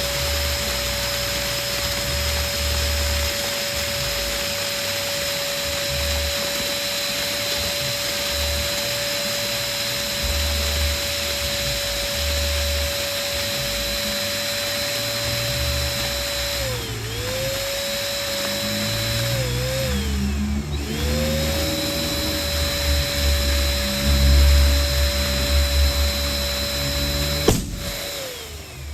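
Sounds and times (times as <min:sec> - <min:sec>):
electric balloon pump whine: 0:00.0 - 0:28.9
low thuds: 0:27.4 - 0:28.1.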